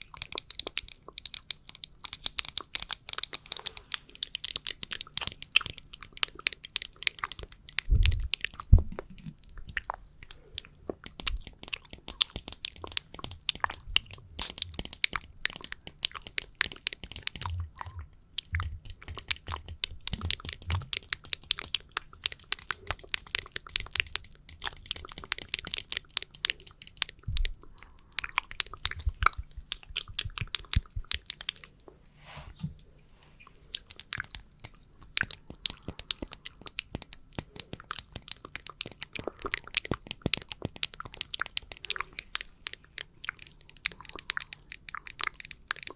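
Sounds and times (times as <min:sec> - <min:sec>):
soft deep thumps: 0:07.9 - 0:09.2.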